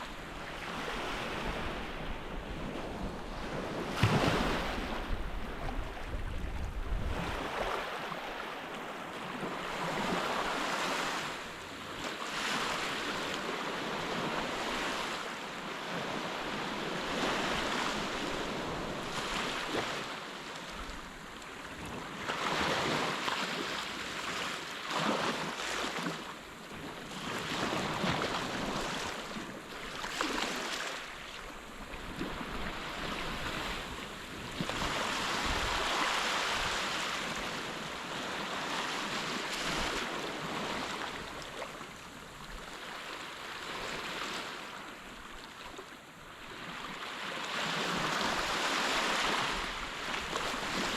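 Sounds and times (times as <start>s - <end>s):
wind rumble on microphone: 0.0s - 8.4s, 31.4s - 41.4s
small waves washing onto sand: 0.0s - 50.9s.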